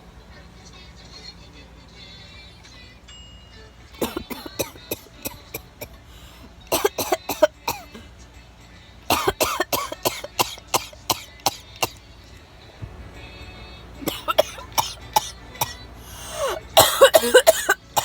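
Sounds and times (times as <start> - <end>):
person coughing: 4.0 - 6.0, 6.7 - 8.1, 9.1 - 12.0, 14.0 - 18.0.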